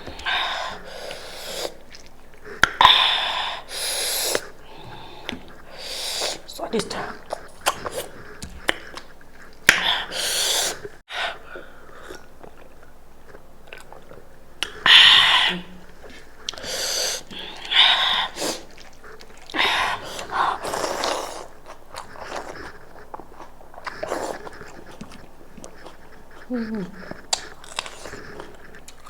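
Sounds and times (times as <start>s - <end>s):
close chewing: 0.0s - 10.1s, 10.7s - 29.0s
small mouth clicks: 11.9s - 29.0s.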